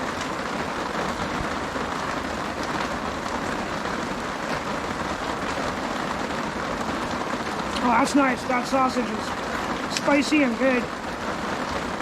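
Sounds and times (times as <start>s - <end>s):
heavy rain on a tarp: 0.0s - 12.0s.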